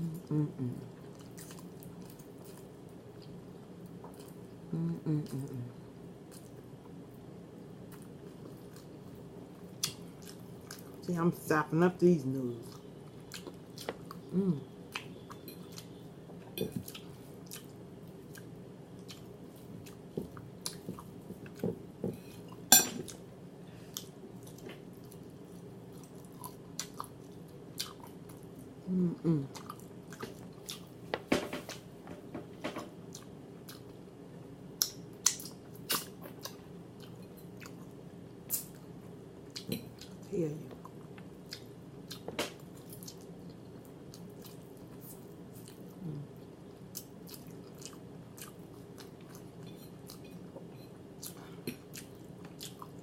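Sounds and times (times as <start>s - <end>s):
person chewing noodles: 0.0s - 5.7s, 6.3s - 7.0s, 7.8s - 11.0s, 12.6s - 16.0s, 16.6s - 31.0s, 33.0s - 34.1s, 34.8s - 40.2s, 40.8s - 53.0s
faint steady hum: 0.0s - 53.0s.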